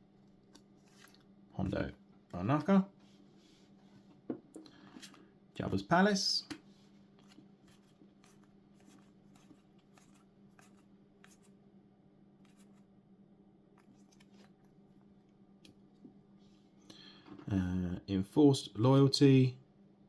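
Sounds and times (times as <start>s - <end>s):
trading cards rustling: 0.4s - 1.3s, 7.2s - 11.6s.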